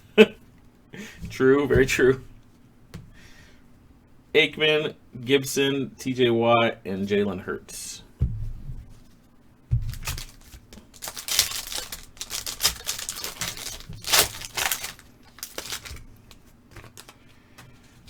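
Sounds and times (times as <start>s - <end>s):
dull thump: 1.3s - 3.1s, 8.2s - 9.0s, 9.7s - 10.2s
foil pack tearing and crinkling: 9.9s - 17.2s.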